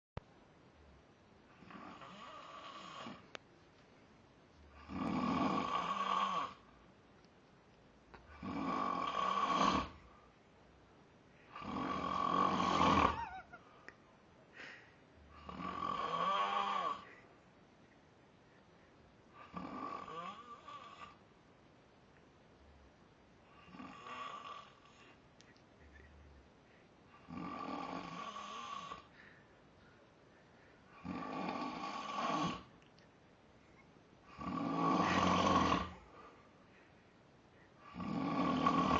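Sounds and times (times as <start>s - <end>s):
man snoring: 1.6s - 3.3s, 4.8s - 6.6s, 8.3s - 10.0s, 11.5s - 13.4s, 15.3s - 17.1s, 19.4s - 21.2s, 23.6s - 25.1s, 27.2s - 29.1s, 31.0s - 32.7s, 34.3s - 36.1s, 37.8s - 38.9s.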